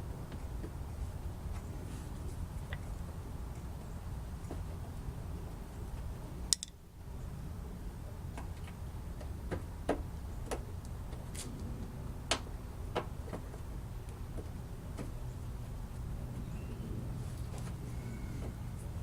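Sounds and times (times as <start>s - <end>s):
low steady hum: 0.0s - 19.0s
hand tool clicks and taps: 6.5s - 6.7s.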